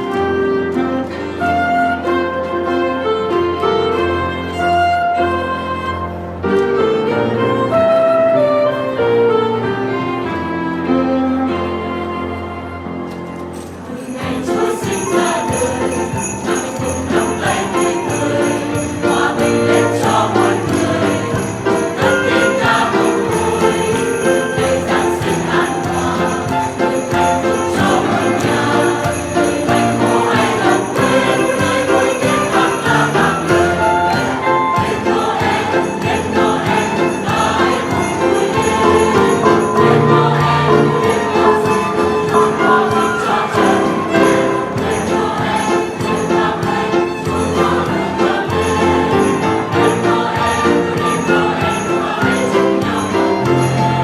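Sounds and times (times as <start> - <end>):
choir-like backing: 0.0 - 54.0
small bells jingling: 13.9 - 54.0.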